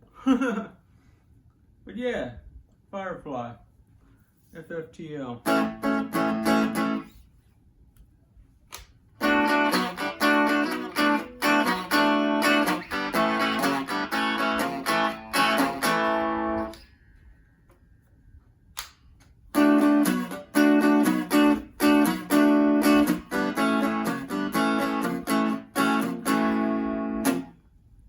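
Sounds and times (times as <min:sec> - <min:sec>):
electric guitar strumming chords: 0:05.4 - 0:07.1, 0:09.2 - 0:16.9, 0:19.5 - 0:27.6.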